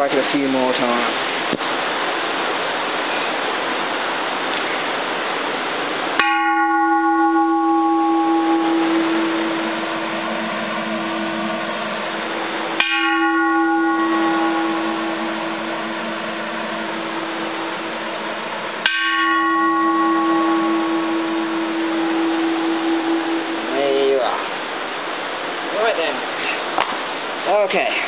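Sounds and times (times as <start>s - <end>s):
heavy rain on a tin roof: 0.0s - 6.2s
temple bell ringing: 6.2s - 25.4s.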